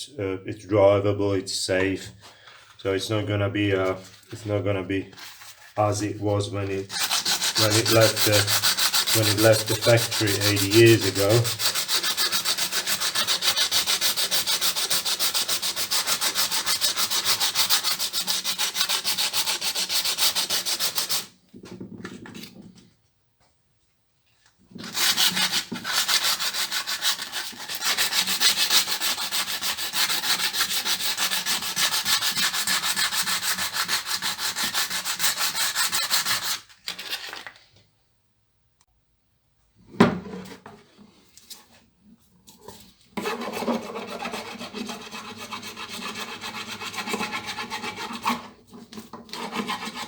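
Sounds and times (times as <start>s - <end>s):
hand sanding strokes: 6.8s - 21.3s, 24.9s - 36.7s, 43.2s - 48.4s, 49.4s - 50.0s.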